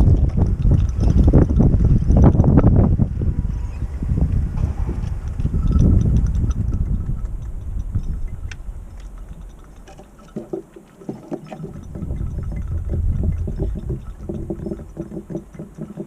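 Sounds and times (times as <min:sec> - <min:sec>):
wind buffeting microphone: 0:00.0 - 0:16.0
birds pecking at seed: 0:04.8 - 0:16.0.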